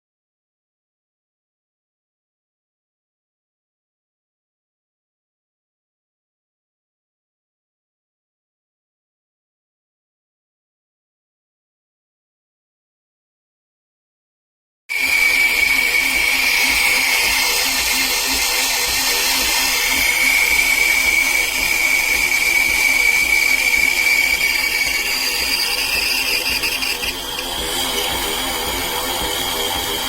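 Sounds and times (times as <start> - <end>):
espresso machine whirring: 14.9 - 30.0.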